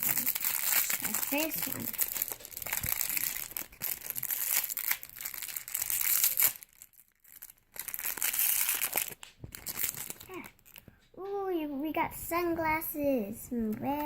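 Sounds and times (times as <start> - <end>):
plastic wrapping crinkling and tearing: 0.0 - 11.0.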